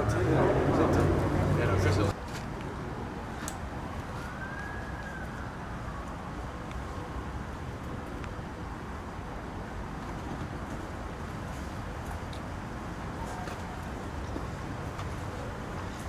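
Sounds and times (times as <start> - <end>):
distant emergency siren wail: 4.1 - 6.2.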